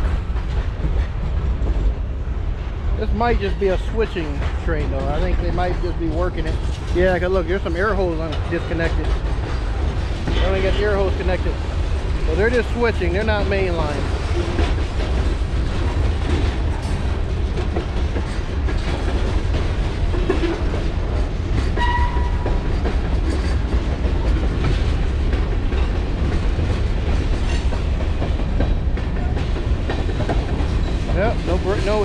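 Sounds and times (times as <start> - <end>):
freight train rumbling past: 0.0 - 32.0
wheels clicking over rail joints: 3.0 - 32.0.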